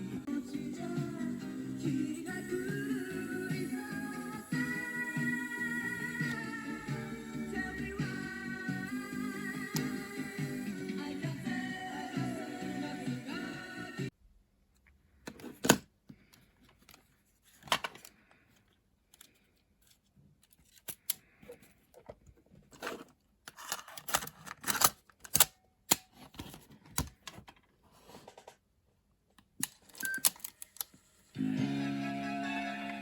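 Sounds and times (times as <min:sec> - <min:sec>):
small parts clicking and scraping: 0:19.0 - 0:22.1, 0:22.7 - 0:25.5.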